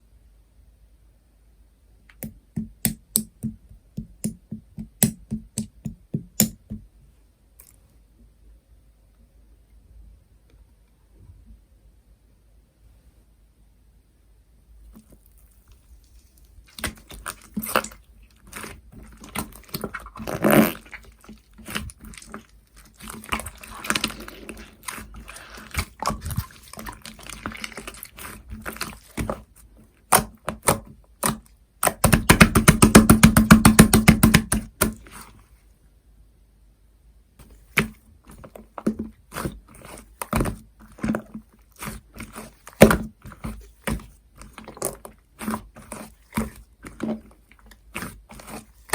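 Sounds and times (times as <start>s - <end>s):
slime squishing: 14.9s - 35.5s, 37.4s - 48.9s.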